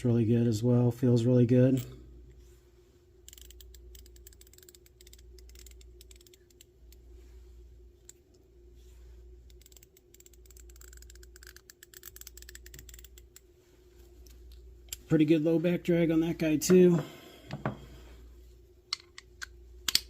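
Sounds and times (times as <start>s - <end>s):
ratchet pawl clicking: 3.3s - 7.0s, 9.5s - 13.4s.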